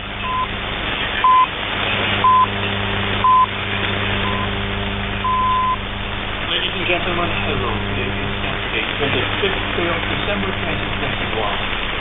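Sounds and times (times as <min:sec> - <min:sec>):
low hum: 0:00.0 - 0:12.0
receiver hiss: 0:00.0 - 0:12.0
radio time signal beeps: 0:00.2 - 0:00.5, 0:01.2 - 0:01.5, 0:02.2 - 0:02.6, 0:03.2 - 0:03.6, 0:04.2 - 0:04.6, 0:05.2 - 0:05.8.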